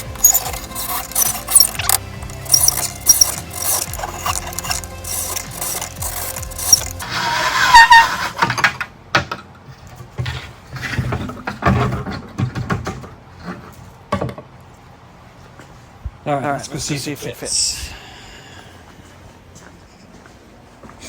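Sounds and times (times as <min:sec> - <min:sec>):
scattered clicks: 0:00.0 - 0:07.0
hand tool scraping fiberglass: 0:00.0 - 0:08.5.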